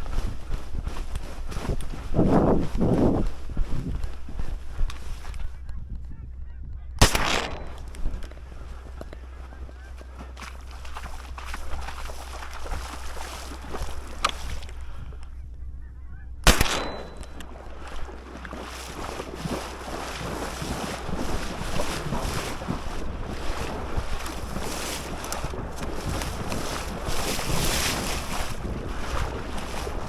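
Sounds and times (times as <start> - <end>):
wind on microphone: 0.0 - 7.0, 10.8 - 16.2, 16.9 - 30.0
shotgun shot: 7.0 - 8.0, 16.4 - 17.4
geese honking: 7.8 - 30.0.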